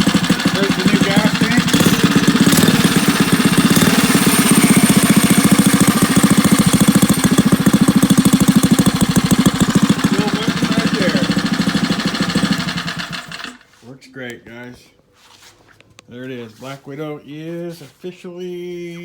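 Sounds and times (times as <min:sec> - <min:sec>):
two-stroke engine idling: 0:00.0 - 0:13.6.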